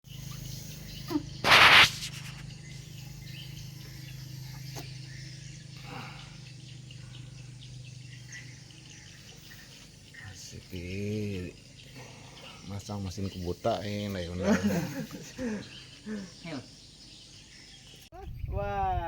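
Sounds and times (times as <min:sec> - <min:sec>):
steady low hum: 0:00.0 - 0:18.1
faint bird chirps: 0:00.0 - 0:19.0
brief rush of noise: 0:01.4 - 0:02.4.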